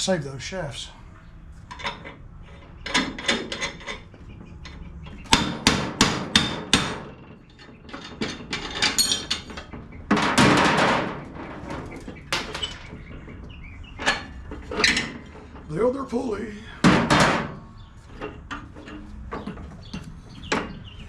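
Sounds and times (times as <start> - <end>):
hammer striking metal: 5.3 - 7.1
light metal clanks: 7.4 - 15.7.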